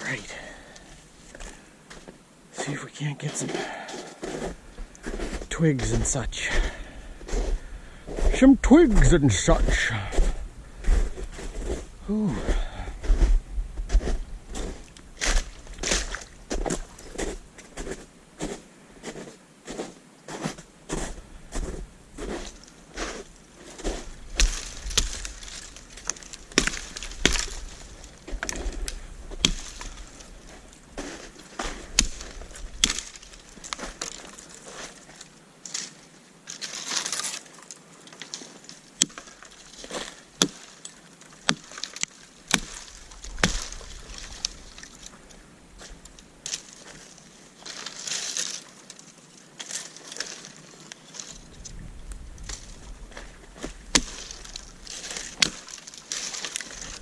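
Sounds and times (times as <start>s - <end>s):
twigs snapping: 14.8s - 17.4s, 22.2s - 57.0s.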